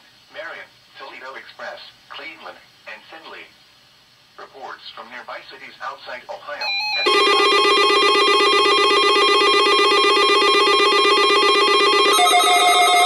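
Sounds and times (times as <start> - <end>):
pulsing electronic alarm tone: 6.6 - 13.0.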